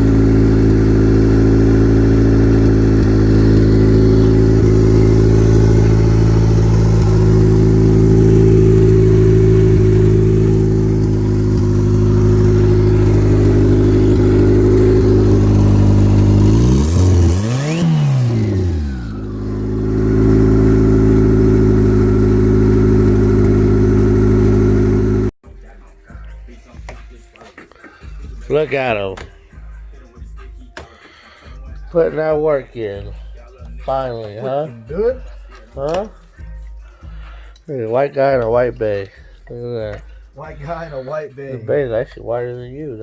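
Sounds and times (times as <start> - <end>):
car engine idling and revving: 0.0 - 25.4, 34.9 - 43.0.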